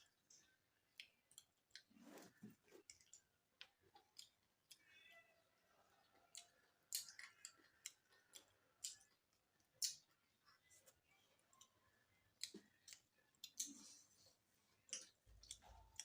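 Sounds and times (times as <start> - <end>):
eating and utensil clicks: 2.8 - 5.1, 6.1 - 14.2, 14.9 - 16.0.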